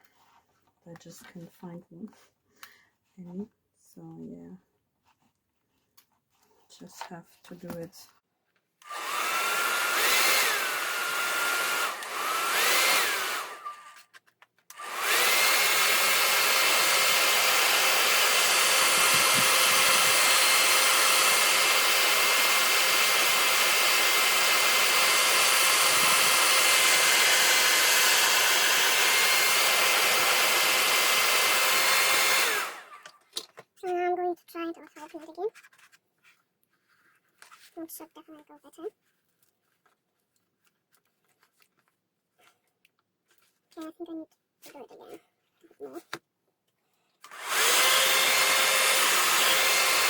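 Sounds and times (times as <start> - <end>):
hot-air blower whining: 8.8 - 14.0, 14.7 - 33.2, 47.2 - 50.0.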